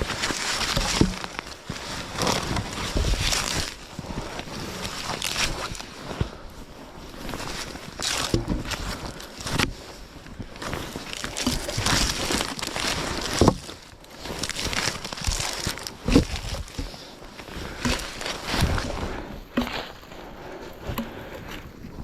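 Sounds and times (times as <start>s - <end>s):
rustling and crunching: 0.0s - 22.0s.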